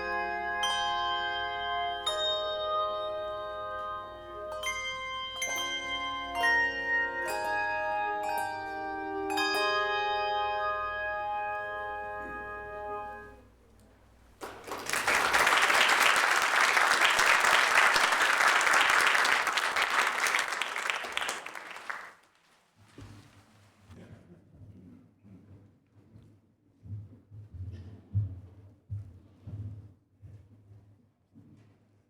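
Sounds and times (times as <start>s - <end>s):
tuned bells ringing: 0.0s - 12.8s
audience applauding: 14.4s - 22.2s.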